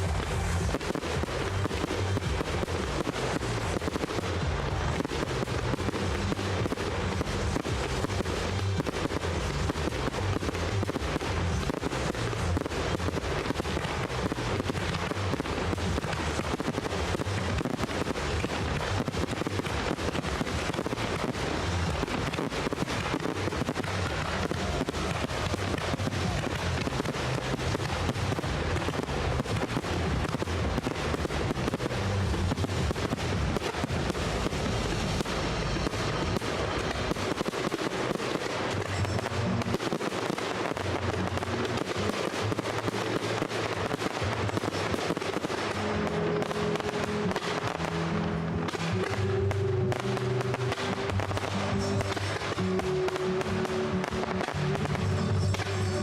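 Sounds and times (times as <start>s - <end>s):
fireworks crackling and banging: 0.0s - 56.0s
music playing: 0.0s - 56.0s.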